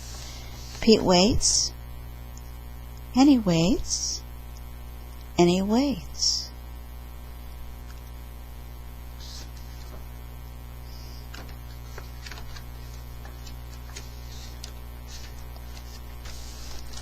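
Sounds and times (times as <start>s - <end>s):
electrical mains hum: 0.0s - 17.0s.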